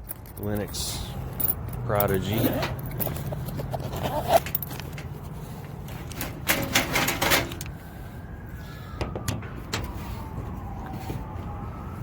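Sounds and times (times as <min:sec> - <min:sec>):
metal door clicks and rattles: 0:06.1 - 0:07.7.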